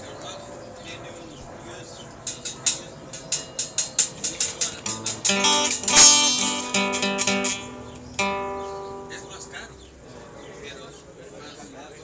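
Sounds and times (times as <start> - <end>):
guitar strumming: 4.4 - 10.0.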